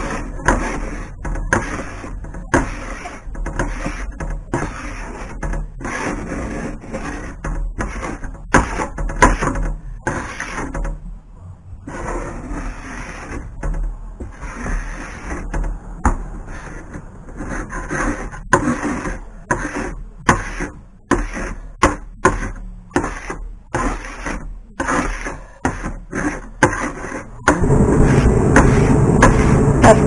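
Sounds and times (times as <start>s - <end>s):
paint being scraped off: 0.0s - 10.9s, 11.9s - 30.0s.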